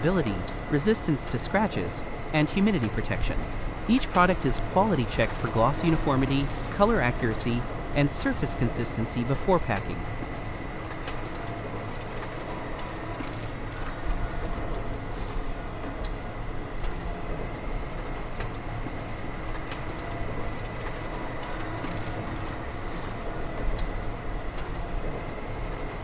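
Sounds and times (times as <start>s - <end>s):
machinery low rumble: 0.0s - 10.2s
high machine whine: 0.0s - 10.8s.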